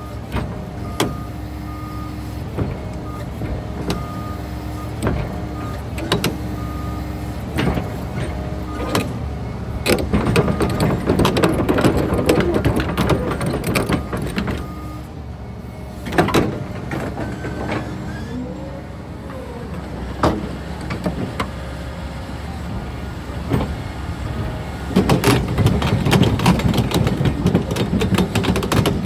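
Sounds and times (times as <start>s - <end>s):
excavator diesel engine: 0.0s - 29.0s
hydraulic whines: 0.0s - 29.0s
metallic clanks and knocking: 9.9s - 14.8s, 24.9s - 29.0s.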